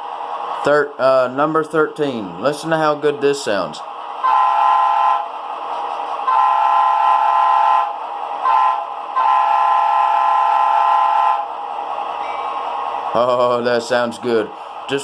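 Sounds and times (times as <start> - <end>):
multi-tone air horn blasts: 4.2 - 5.3, 6.3 - 11.5.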